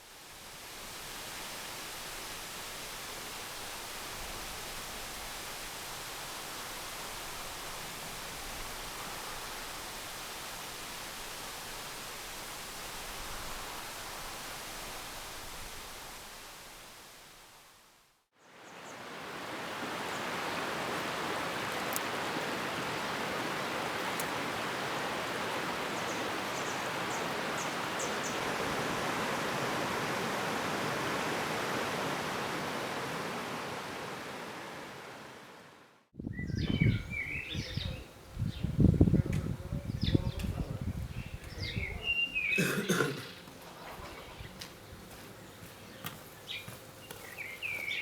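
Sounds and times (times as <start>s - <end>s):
stream water flowing: 18.5s - 35.8s
wind gusts on microphone: 36.2s - 42.3s
birds chirping: 36.2s - 48.0s.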